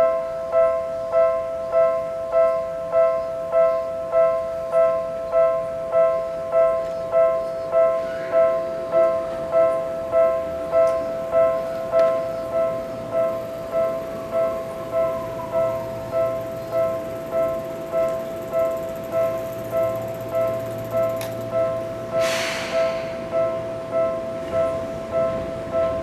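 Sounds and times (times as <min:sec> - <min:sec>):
level crossing warning bell: 0:00.0 - 0:26.0.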